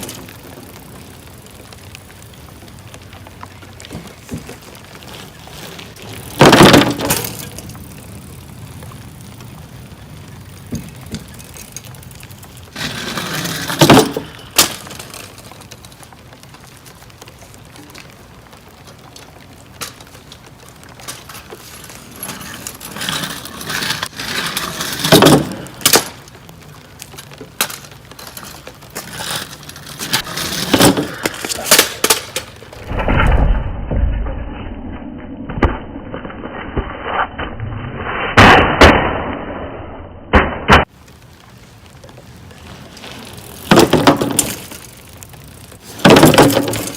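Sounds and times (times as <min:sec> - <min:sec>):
wooden ramp clattering: 0:03.9 - 0:07.6, 0:12.8 - 0:15.4, 0:22.3 - 0:26.2, 0:27.6 - 0:34.2, 0:43.6 - 0:44.8, 0:45.9 - 0:46.9.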